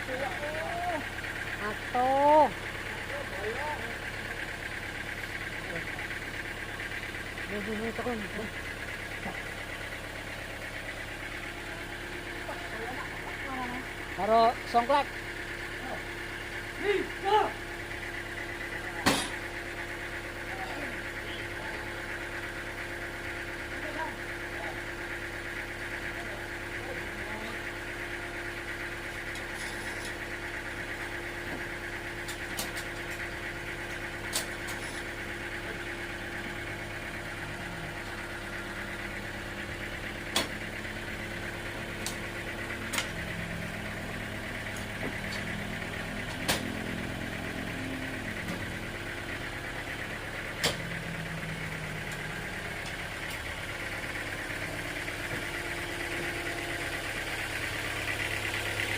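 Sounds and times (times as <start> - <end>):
sawmill machinery humming: 0.0 - 58.9.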